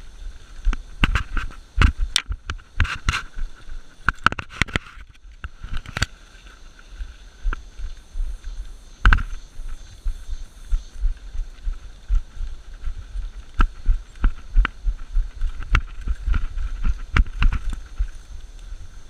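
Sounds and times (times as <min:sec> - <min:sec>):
footsteps: 0:00.0 - 0:19.0
gear knocking and clicking: 0:12.1 - 0:18.6.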